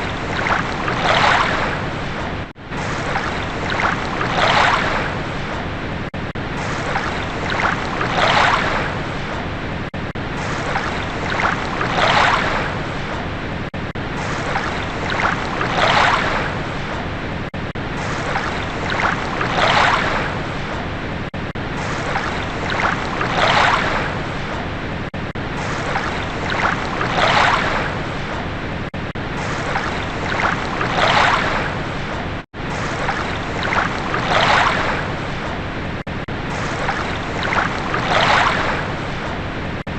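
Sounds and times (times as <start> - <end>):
waves washing in: 0.0 - 39.9.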